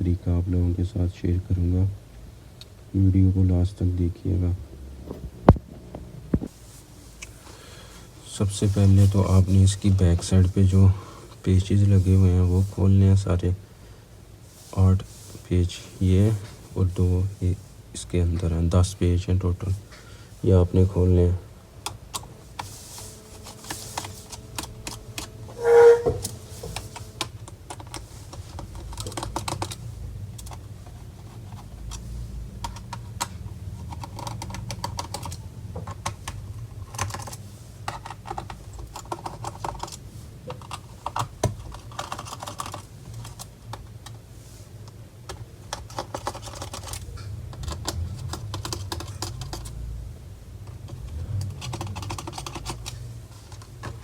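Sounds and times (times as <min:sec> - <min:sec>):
screws scratching as they turn: 0:22.6 - 0:27.3
pitched squeak: 0:25.4 - 0:26.9.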